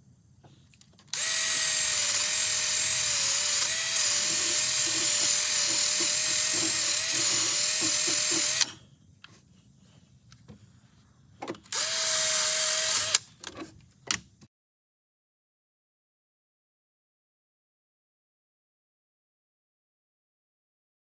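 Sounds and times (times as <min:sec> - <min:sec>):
air tool whining: 0:00.4 - 0:08.9, 0:11.5 - 0:13.3.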